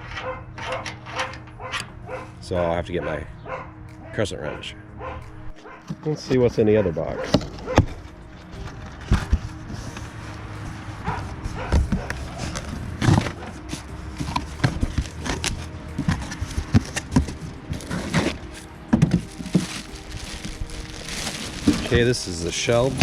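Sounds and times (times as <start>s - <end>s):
cardboard box being handled: 11.1s - 23.0s.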